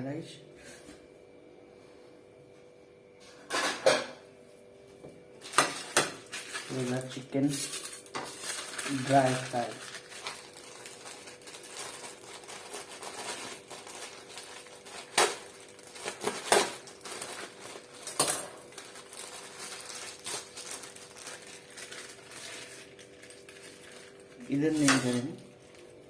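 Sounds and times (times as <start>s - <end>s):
food packaging crinkling: 5.4s - 26.0s.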